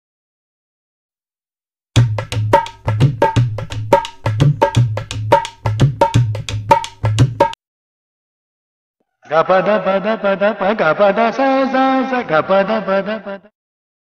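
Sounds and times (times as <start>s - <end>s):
tabla playing fast rhythm: 2.0s - 7.6s.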